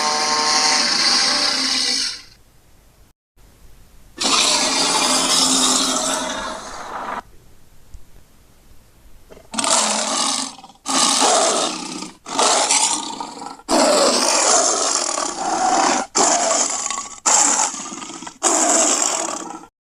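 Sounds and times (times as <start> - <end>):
dinosaur roars: 0.0 - 2.3, 4.2 - 7.2, 9.3 - 19.7.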